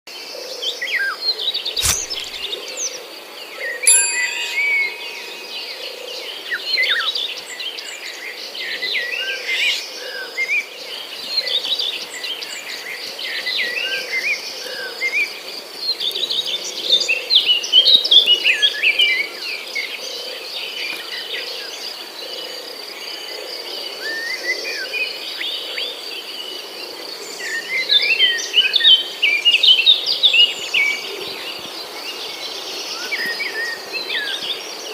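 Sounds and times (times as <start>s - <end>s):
sharp click: 1.8s - 2.5s.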